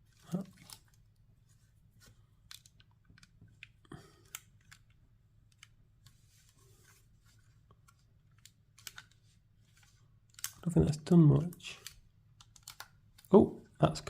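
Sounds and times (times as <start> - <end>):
plastic bricks clicking and rubbing: 7.8 - 10.6, 11.4 - 13.3.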